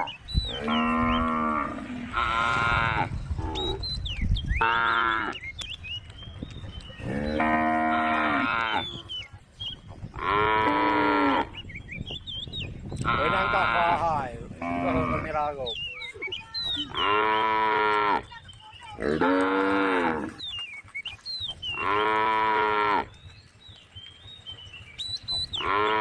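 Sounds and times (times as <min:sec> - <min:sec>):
cows mooing: 0:00.0 - 0:03.9, 0:04.6 - 0:05.4, 0:07.0 - 0:09.1, 0:10.1 - 0:11.6, 0:13.0 - 0:15.6, 0:16.8 - 0:18.3, 0:19.0 - 0:20.4, 0:21.7 - 0:23.2, 0:25.4 - 0:26.0.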